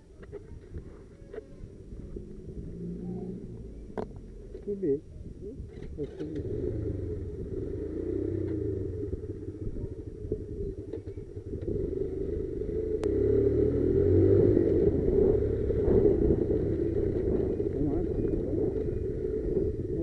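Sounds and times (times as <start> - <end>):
motorcycle engine rumbling: 0.0 - 20.0.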